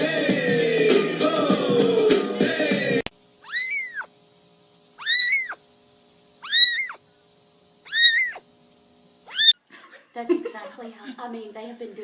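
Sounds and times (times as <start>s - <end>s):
cat meowing: 3.4s - 4.1s, 5.0s - 5.6s, 6.4s - 7.0s, 7.9s - 8.4s, 9.3s - 9.6s.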